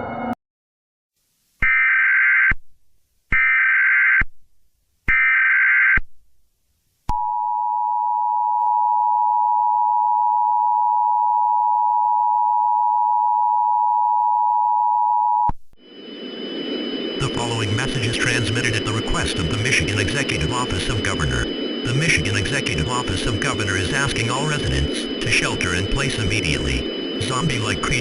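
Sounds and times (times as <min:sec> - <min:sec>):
screeching data header bursts: 0:15.8 - 0:28.0
two-tone attention signal: 0:15.8 - 0:28.0.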